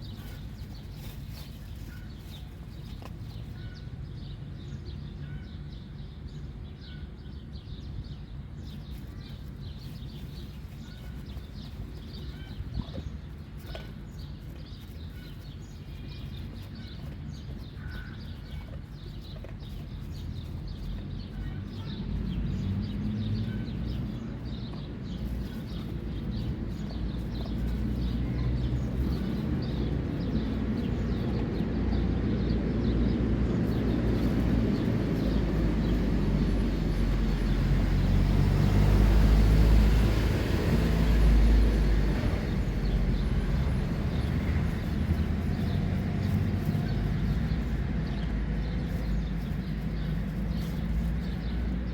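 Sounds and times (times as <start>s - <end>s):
low engine rumble: 7.8s - 51.9s.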